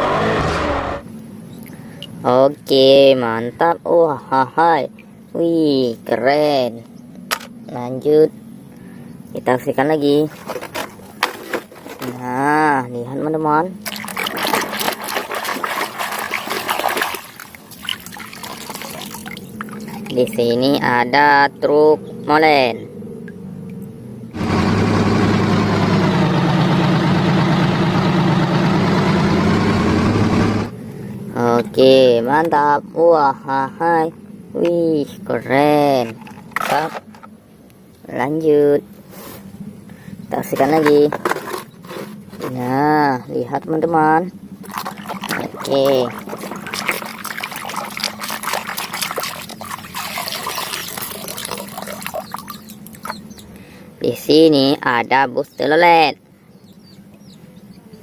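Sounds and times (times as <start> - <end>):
water trickling and splashing: 13.8 - 20.5, 44.6 - 53.4
truck engine idling: 24.3 - 30.7.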